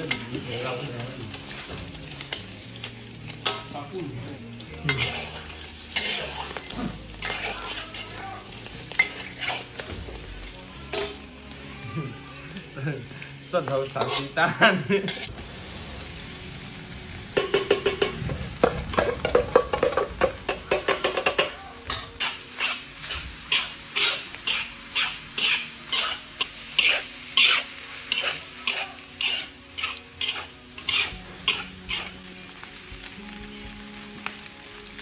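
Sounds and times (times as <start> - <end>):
oil sizzling: 0.0 - 35.0
spatula scraping in a pan: 4.7 - 11.3, 13.1 - 15.4, 17.4 - 32.7.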